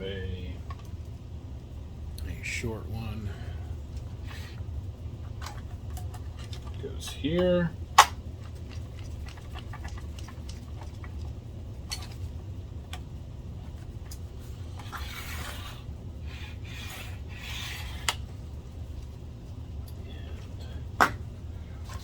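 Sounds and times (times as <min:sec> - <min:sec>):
steady low hum: 0:00.0 - 0:22.0
rubbing or rasping: 0:14.6 - 0:18.2.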